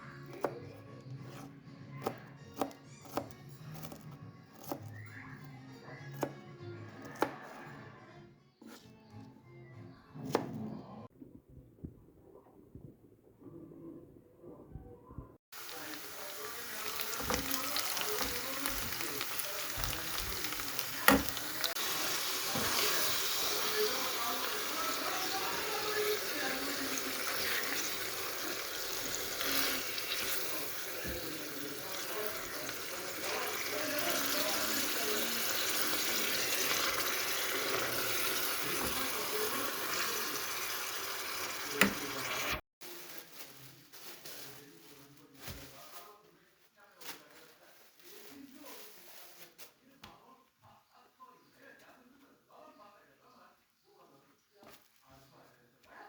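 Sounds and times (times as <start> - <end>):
food sizzling in a pan: 15.5 - 43.1
tap running into a sink: 21.0 - 21.5, 41.7 - 42.4.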